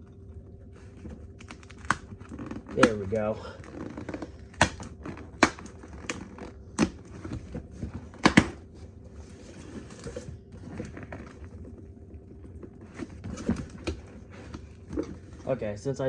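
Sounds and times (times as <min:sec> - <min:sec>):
package rustling and scraping: 0:00.8 - 0:15.6
sharp taps and knocks on package: 0:04.0 - 0:08.6.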